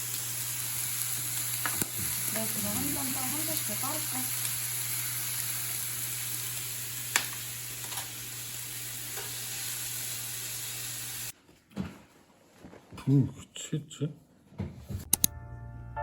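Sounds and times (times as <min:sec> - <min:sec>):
sizzling hiss: 0:00.0 - 0:11.3.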